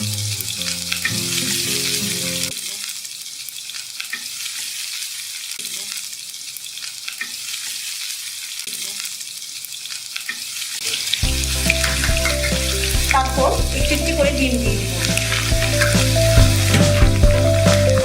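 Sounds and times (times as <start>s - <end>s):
background music: 0.0s - 2.5s, 11.2s - 18.0s
onions sizzling in oil: 0.0s - 18.0s.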